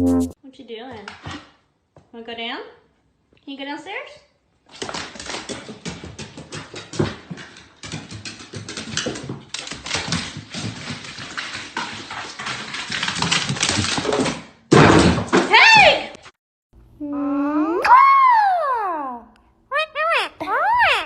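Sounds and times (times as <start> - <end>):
rapid clatter of taps: 4.8 - 14.4.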